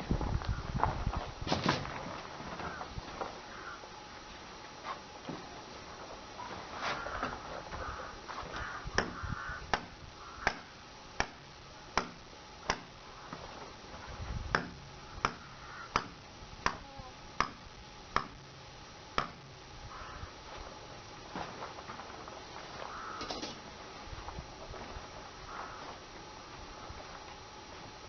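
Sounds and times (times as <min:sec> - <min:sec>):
sharp knocks: 0:09.0 - 0:11.4.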